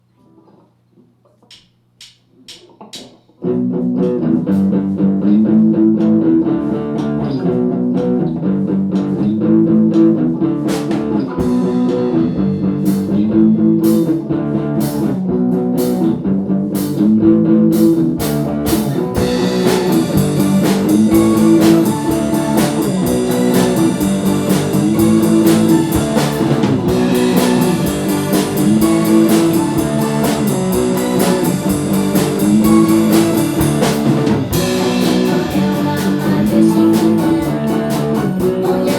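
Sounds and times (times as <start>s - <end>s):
low repeating guitar figure: 3.4s - 38.8s
live band music: 9.9s - 15.2s, 17.7s - 38.9s
drum kit with cymbals: 10.6s - 16.2s, 17.7s - 38.9s.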